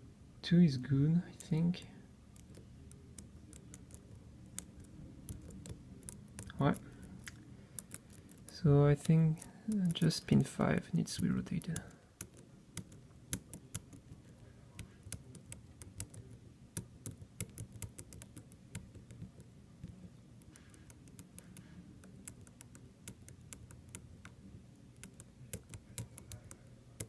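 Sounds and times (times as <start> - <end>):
lock pick clicking against pins: 2.4 - 10.5, 25.0 - 27.0.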